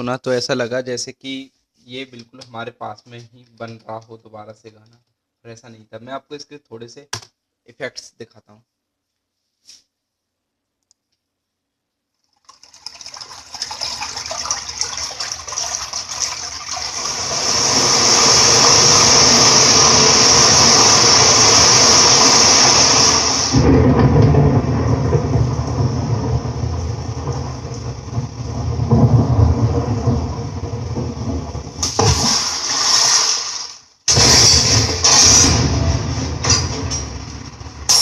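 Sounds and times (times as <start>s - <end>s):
rushing water: 12.4s - 33.8s.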